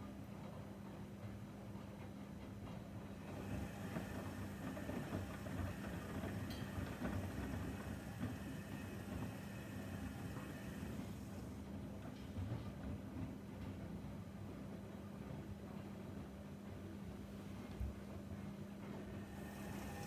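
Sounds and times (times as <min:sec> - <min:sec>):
washing machine running: 0:01.2 - 0:17.0, 0:17.7 - 0:20.0
washing machine drum rumble: 0:03.2 - 0:12.6, 0:19.2 - 0:20.0.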